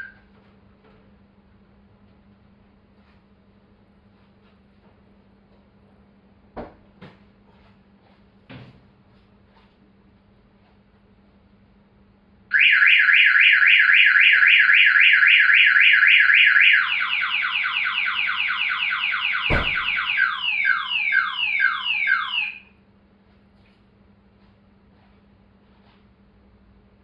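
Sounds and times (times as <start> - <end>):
car alarm siren: 12.5 - 22.7
low thump: 19.5 - 20.1.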